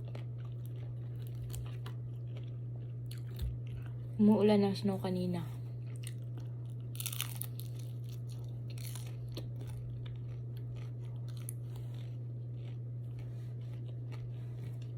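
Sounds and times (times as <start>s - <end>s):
person chewing crunchy food: 0.0s - 4.2s, 5.7s - 14.9s
steady low hum: 0.0s - 14.9s.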